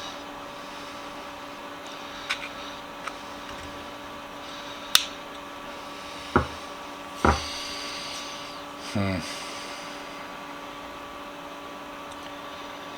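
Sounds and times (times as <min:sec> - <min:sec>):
steady hum: 0:00.0 - 0:11.6
dull knocks: 0:06.4 - 0:07.6.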